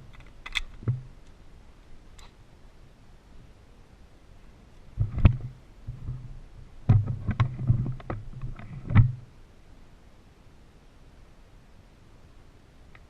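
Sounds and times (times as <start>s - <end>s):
sharp knocks and clicks: 6.9s - 9.2s.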